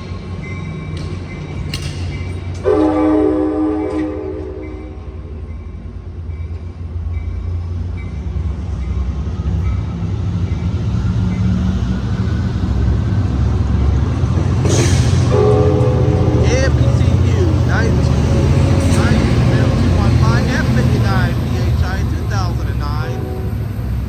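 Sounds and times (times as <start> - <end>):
diesel locomotive rumble: 0.0 - 24.0
train horn chord: 2.6 - 5.4, 14.6 - 24.0.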